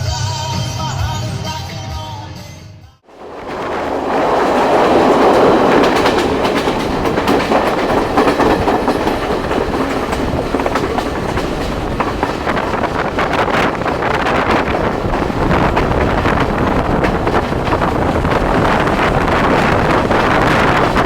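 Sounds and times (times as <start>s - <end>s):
train rumbling on rails: 3.0s - 21.0s
wheels clattering over track: 3.1s - 21.0s.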